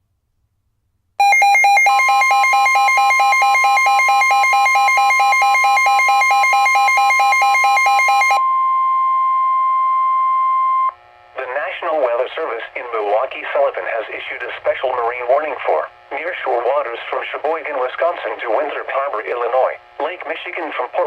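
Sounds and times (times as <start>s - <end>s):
two-pitch electronic alarm warbling: 1.2s - 8.5s.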